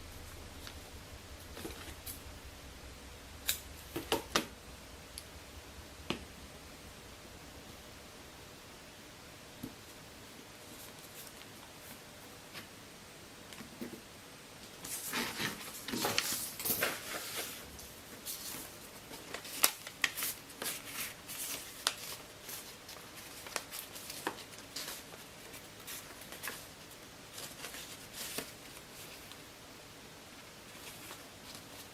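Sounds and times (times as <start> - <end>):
paper rustling and crinkling: 14.7 - 29.4, 30.7 - 31.9.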